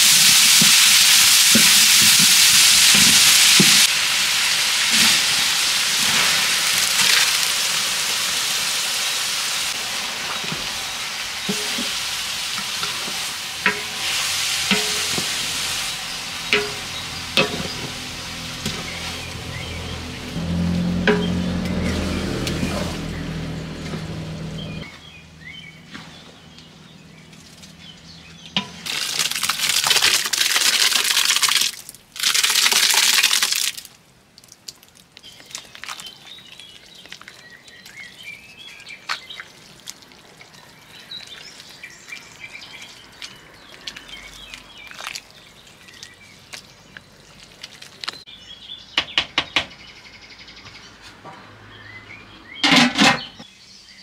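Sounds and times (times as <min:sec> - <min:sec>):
loud hissing noise rushes: 0:00.0 - 0:19.4.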